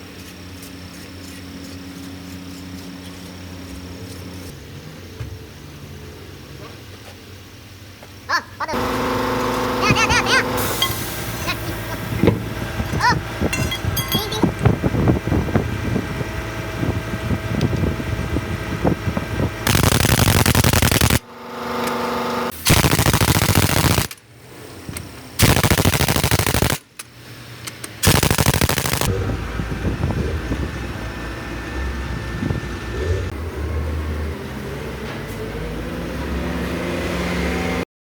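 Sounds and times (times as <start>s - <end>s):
power tool rattling bursts: 19.7s - 24.2s, 25.4s - 26.9s, 28.0s - 29.1s.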